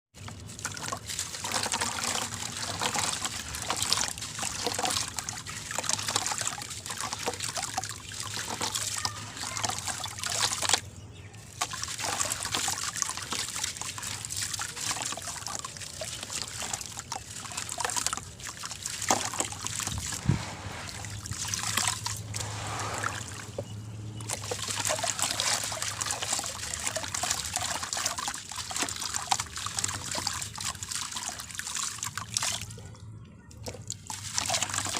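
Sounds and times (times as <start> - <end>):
sand crumbling into water: 19.0 - 23.6.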